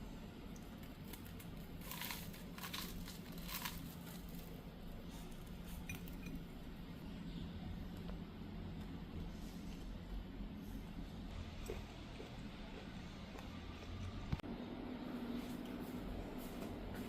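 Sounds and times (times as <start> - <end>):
faint low hum: 0.0 - 17.0
packaging crinkling: 0.9 - 4.6.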